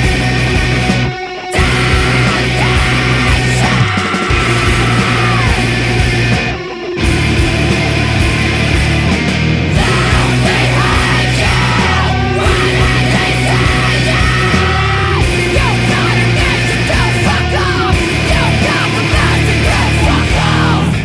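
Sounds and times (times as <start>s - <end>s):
bass and drums: 0.0s - 21.0s
distorted rock guitars: 0.0s - 21.0s
person shouting vocals: 1.6s - 5.7s, 9.8s - 21.0s.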